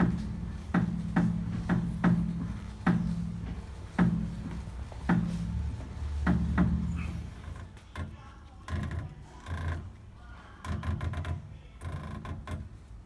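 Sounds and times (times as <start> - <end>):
suspension knocks and clunks: 0.0 - 7.7.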